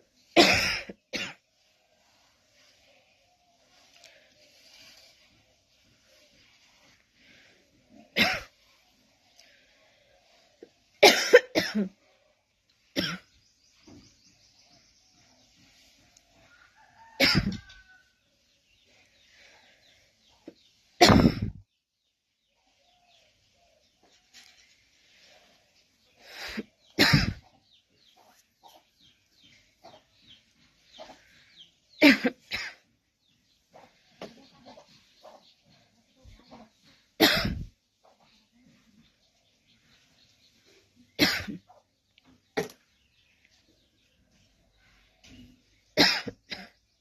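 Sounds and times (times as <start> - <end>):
person coughing: 0.4 - 1.4, 8.2 - 8.5, 11.0 - 12.0, 17.2 - 17.6, 21.0 - 21.6, 27.0 - 27.4, 37.2 - 37.7, 41.2 - 41.6, 46.0 - 46.8.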